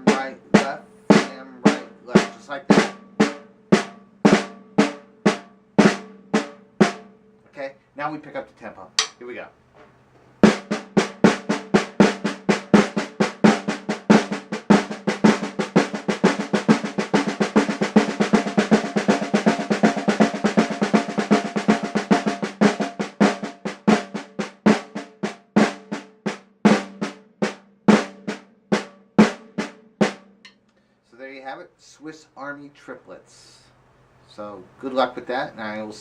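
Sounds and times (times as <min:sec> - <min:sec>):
snare drum played with sticks: 0:00.0 - 0:07.0, 0:09.0 - 0:09.2, 0:10.4 - 0:30.6.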